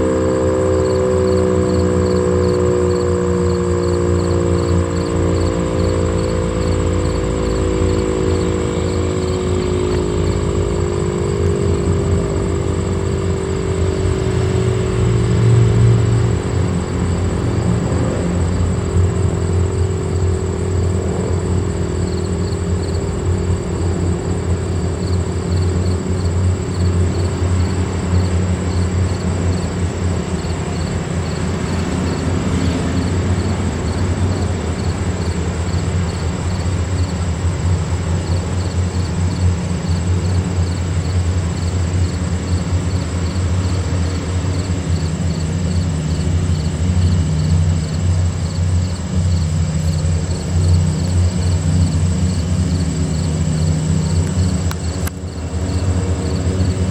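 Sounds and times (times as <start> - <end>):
siren winding down: 0.0 - 22.8.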